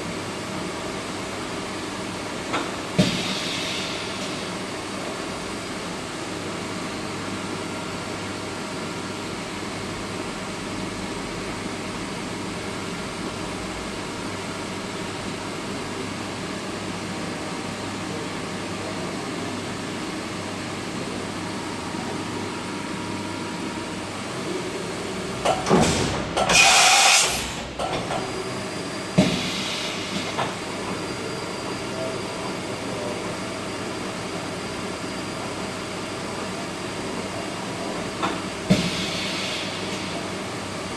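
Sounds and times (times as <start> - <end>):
loud hissing burst: 26.5 - 27.5.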